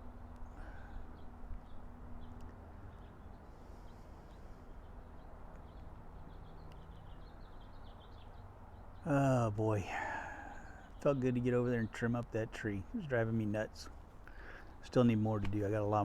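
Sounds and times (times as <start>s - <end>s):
low steady background rumble: 0.0s - 16.0s
small birds chirping: 0.0s - 16.0s.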